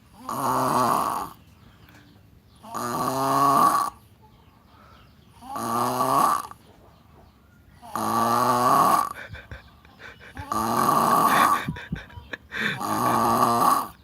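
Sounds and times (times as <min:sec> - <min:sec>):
deep snoring: 0:00.1 - 0:01.4, 0:02.6 - 0:04.0, 0:05.4 - 0:06.6, 0:07.8 - 0:14.0
quiet breathing: 0:04.5 - 0:05.4, 0:08.8 - 0:14.0.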